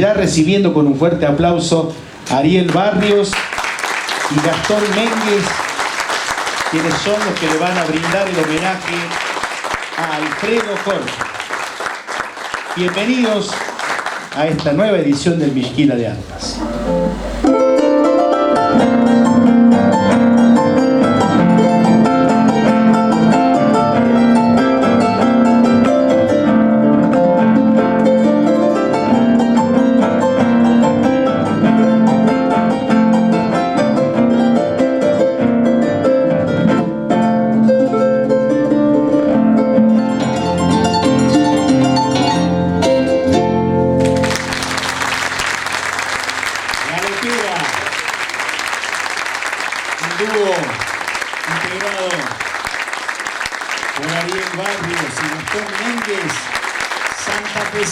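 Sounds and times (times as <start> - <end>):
harp music: 16.2 - 46.7.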